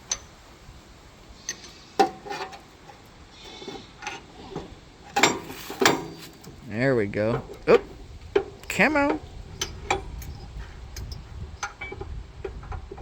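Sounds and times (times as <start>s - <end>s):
metal clanks and clinks: 1.4s - 6.6s.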